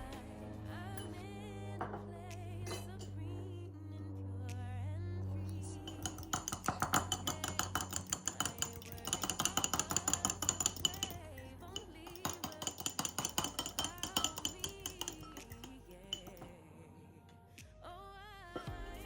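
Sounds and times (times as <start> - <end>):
faint background music: 0.0 - 19.0
utensil beating against mixing bowl: 5.4 - 16.6.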